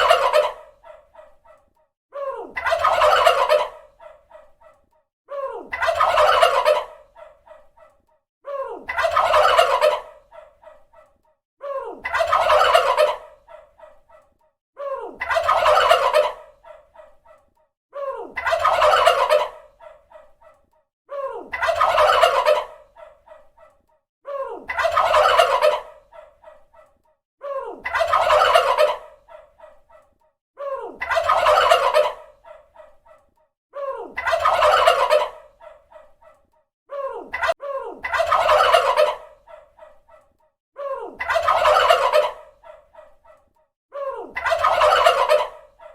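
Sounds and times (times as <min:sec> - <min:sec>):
turkey gobbling: 0:00.0 - 0:01.4, 0:02.6 - 0:04.8, 0:05.7 - 0:07.6, 0:08.9 - 0:10.8, 0:12.0 - 0:14.0, 0:15.2 - 0:17.1, 0:18.4 - 0:20.3, 0:21.5 - 0:23.2, 0:24.7 - 0:26.4, 0:27.8 - 0:29.5, 0:31.0 - 0:33.0, 0:34.2 - 0:36.1, 0:37.3 - 0:40.1, 0:41.2 - 0:43.4, 0:44.4 - 0:45.9.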